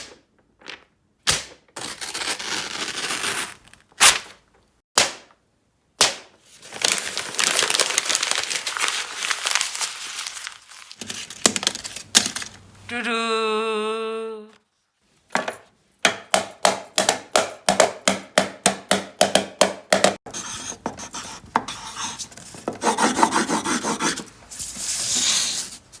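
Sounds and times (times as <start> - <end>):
paper rubbing and scratching: 20.4 - 26.0
paper strokes: 20.4 - 26.0.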